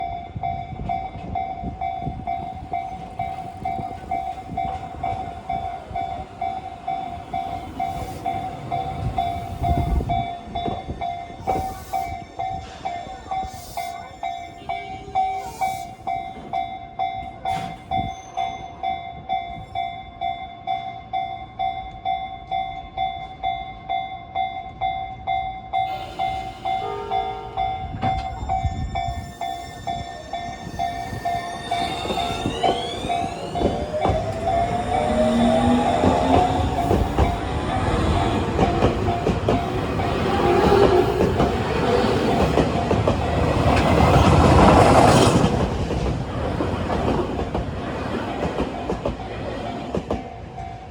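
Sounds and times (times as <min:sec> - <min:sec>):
level-crossing alarm ringing: 0:00.0 - 0:20.2, 0:25.6 - 0:50.9
train rumbling: 0:00.0 - 0:20.3, 0:25.7 - 0:50.9
train horn blast: 0:25.9 - 0:28.3.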